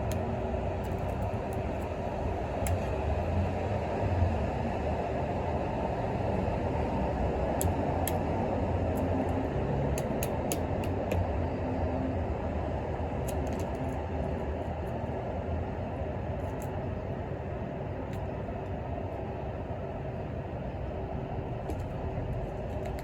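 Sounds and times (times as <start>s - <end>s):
low background rumble: 0.0s - 23.0s
sharp taps and clicks: 8.9s - 11.3s.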